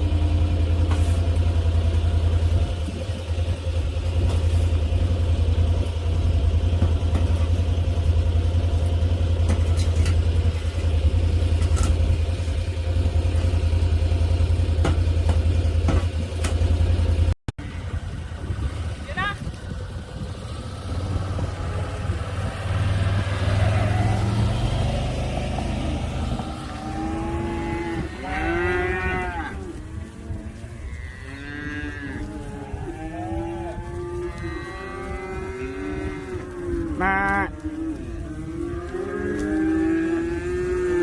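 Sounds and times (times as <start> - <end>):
low engine rumble: 0.0 - 41.0
cows mooing: 20.6 - 41.0.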